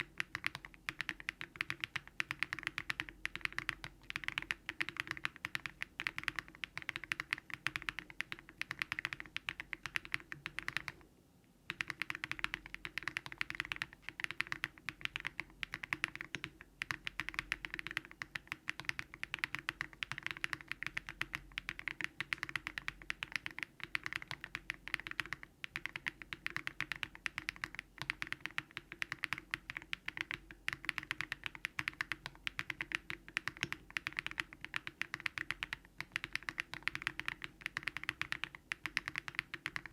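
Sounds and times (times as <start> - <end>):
fast mechanical keyboard typing: 0.0 - 11.0, 11.7 - 39.9.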